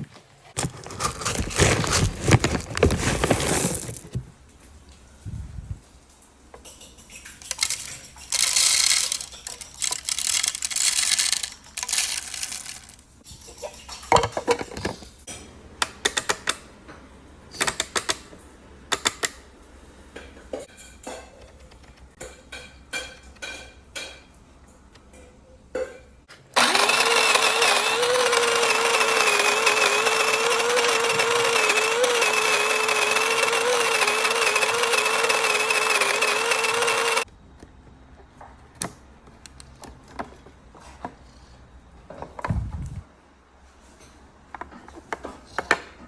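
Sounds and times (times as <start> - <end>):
plastic parts clicking: 7.4 - 13.0
coffee grinder running: 8.4 - 12.9, 26.6 - 37.3.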